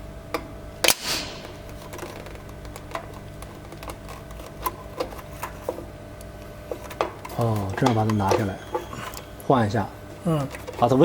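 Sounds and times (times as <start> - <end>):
steady machine hum: 0.0 - 11.0
solenoid valve clicks: 0.3 - 1.8
air exhaust hiss: 0.8 - 1.9.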